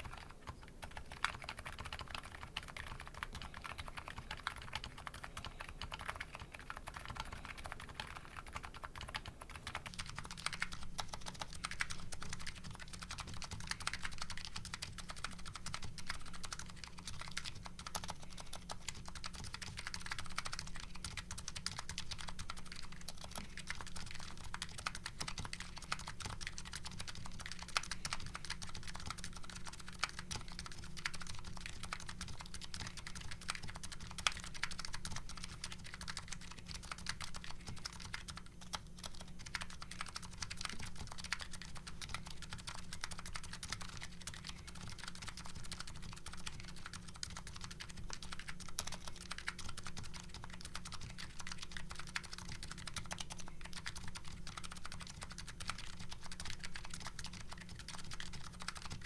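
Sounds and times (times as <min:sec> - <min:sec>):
fast typing on keyboard: 0:00.0 - 0:59.0.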